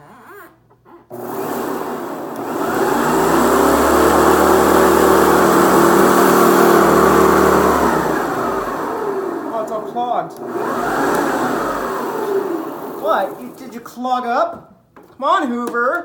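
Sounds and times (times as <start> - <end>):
vacuum cleaner motor whining: 1.1 - 13.9.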